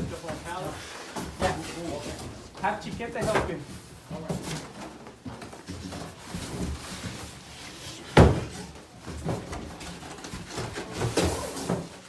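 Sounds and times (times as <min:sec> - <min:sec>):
cardboard rustling: 0:00.0 - 0:12.0
cardboard box thump: 0:08.1 - 0:08.6.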